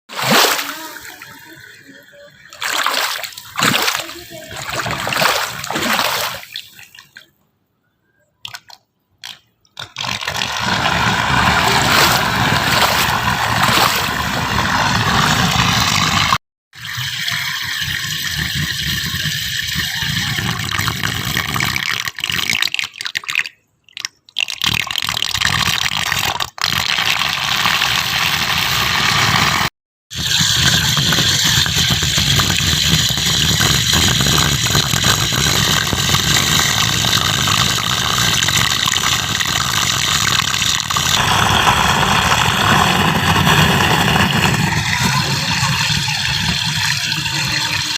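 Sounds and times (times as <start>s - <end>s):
rushing water: 0.1s - 7.1s, 10.3s - 16.4s.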